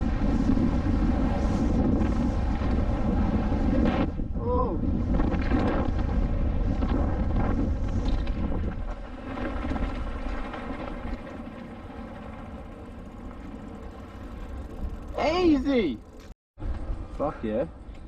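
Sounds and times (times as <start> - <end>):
wind on microphone: 0.0 - 11.5
bike rumbling on dirt trail: 0.0 - 17.2.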